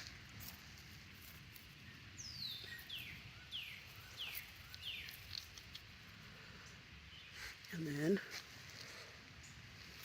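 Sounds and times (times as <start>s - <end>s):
faint outdoor hiss: 0.0s - 10.0s.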